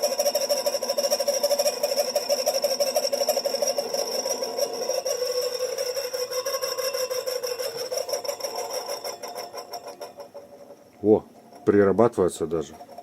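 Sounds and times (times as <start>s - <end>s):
small electric motor whining: 0.0s - 10.6s
scratchy rasp of motor brushes: 0.0s - 13.0s.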